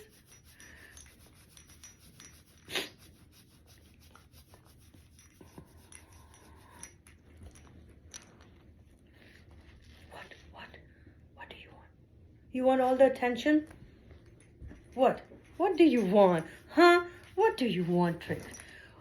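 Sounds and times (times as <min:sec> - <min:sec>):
hands rubbing dog fur: 0:00.0 - 0:06.9.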